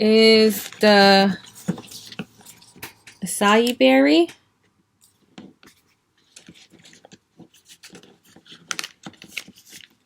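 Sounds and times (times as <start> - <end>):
plastic packets crackling: 0.0 - 3.3, 6.2 - 10.0.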